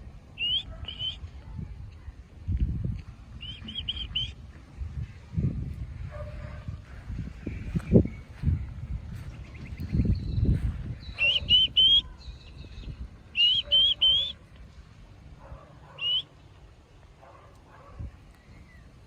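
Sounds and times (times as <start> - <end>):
bird whistling: 0.4 - 1.2, 3.4 - 4.4, 9.5 - 14.4, 15.9 - 16.3.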